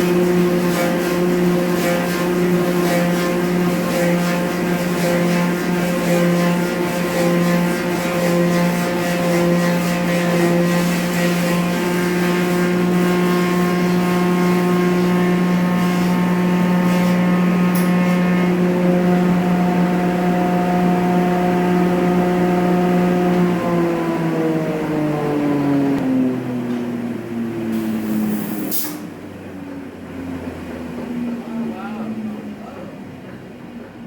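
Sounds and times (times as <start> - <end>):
high wood cutting noise: 0.0 - 23.8
woodworking machine motor hum: 0.0 - 28.4.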